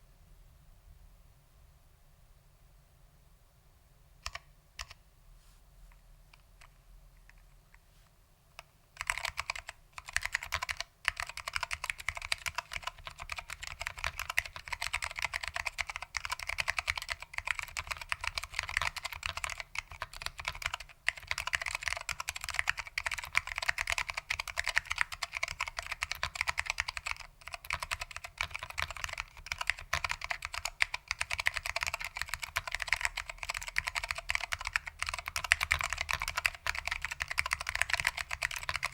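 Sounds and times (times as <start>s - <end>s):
fast keyboard typing: 9.0s - 38.9s.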